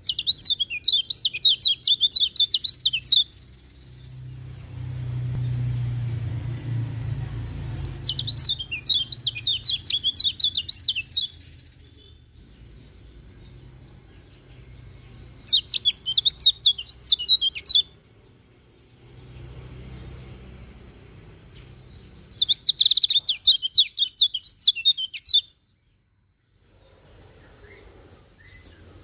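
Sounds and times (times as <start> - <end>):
bird chirping rapidly: 0.0 - 26.0.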